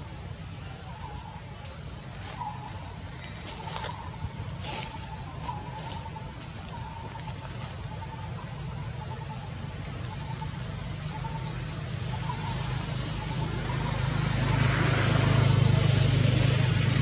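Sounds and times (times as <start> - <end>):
small birds chirping: 0.1 - 14.6
steady low rumble: 15.4 - 17.0.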